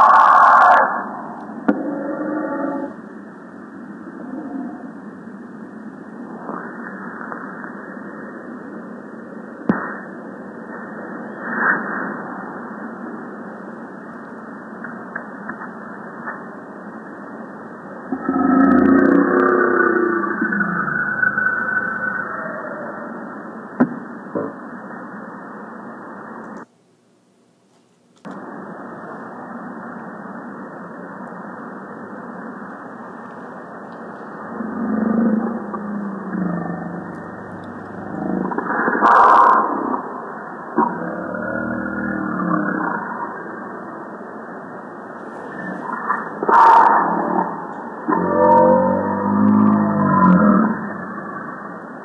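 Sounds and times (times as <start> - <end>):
muffled dinosaur rumble: 0.0 - 8.4, 18.0 - 23.1, 32.8 - 44.0, 45.2 - 52.0.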